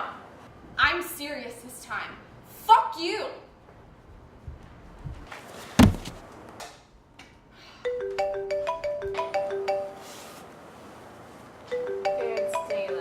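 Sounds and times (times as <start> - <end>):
loud thump: 5.8 - 6.2
marimba phone ringtone: 7.9 - 10.1, 11.7 - 13.0.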